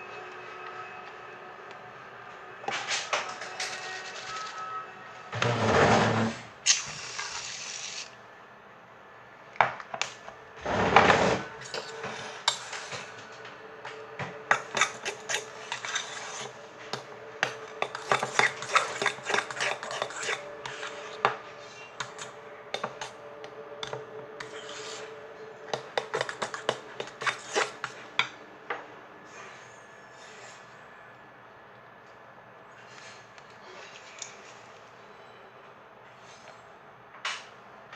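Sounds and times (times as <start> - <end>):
faint steady hum: 0.0 - 37.9
slime scraping and rubbing: 14.8 - 16.6, 18.1 - 21.9, 24.4 - 25.1.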